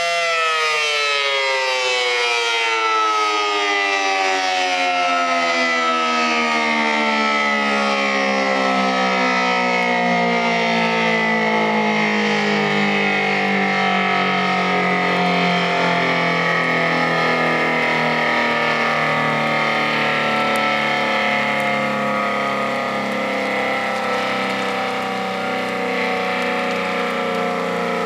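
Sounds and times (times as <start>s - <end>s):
warning siren winding down: 0.0s - 28.0s.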